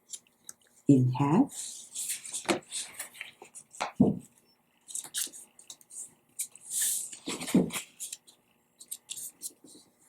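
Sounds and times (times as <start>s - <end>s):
paper rustling: 1.6s - 4.0s, 4.9s - 10.0s.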